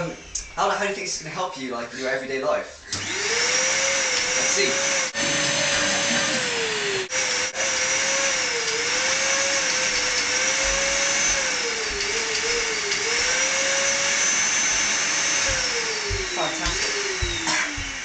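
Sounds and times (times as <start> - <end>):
vacuum cleaner motor whine: 2.8 - 18.0.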